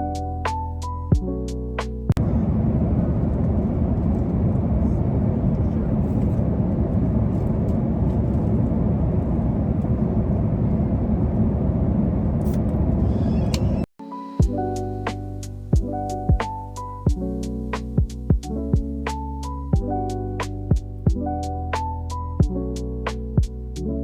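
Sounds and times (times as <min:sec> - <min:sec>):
moving vehicle rumble: 0:02.2 - 0:13.9.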